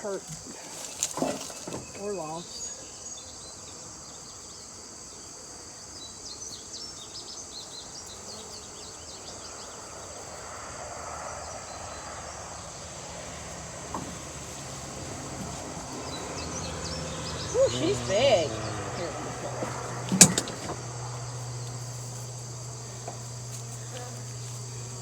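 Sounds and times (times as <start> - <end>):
insects chorus: 0.0 - 25.0.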